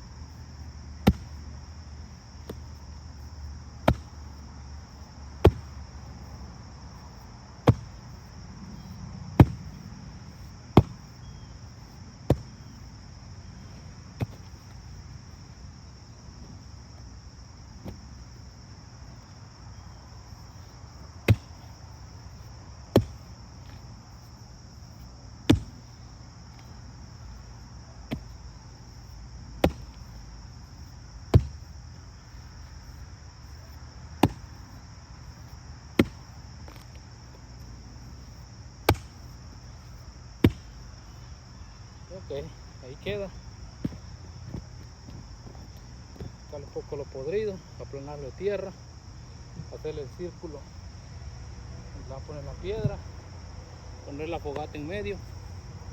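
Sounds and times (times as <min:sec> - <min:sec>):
high insect buzz: 0:00.0 - 0:55.9
hand tool chopping dry ground: 0:01.0 - 0:01.4, 0:02.4 - 0:02.8, 0:03.8 - 0:04.2, 0:05.4 - 0:05.8, 0:07.6 - 0:08.0, 0:09.4 - 0:09.8, 0:10.8 - 0:11.0, 0:12.3 - 0:12.6, 0:14.2 - 0:14.7, 0:21.2 - 0:21.8, 0:22.9 - 0:23.9, 0:25.5 - 0:25.9, 0:28.1 - 0:28.4, 0:29.6 - 0:30.2, 0:31.3 - 0:31.7, 0:34.2 - 0:34.6, 0:36.0 - 0:37.0, 0:38.9 - 0:39.3, 0:40.4 - 0:40.8.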